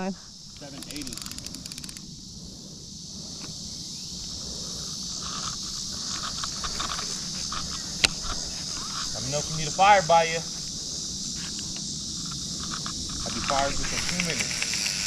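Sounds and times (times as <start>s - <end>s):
high-pitched insect drone: 0.0s - 15.0s
rustling and ticks: 0.5s - 2.1s, 4.2s - 9.2s, 11.3s - 15.0s
rapid clicks: 0.6s - 2.0s, 12.6s - 15.0s.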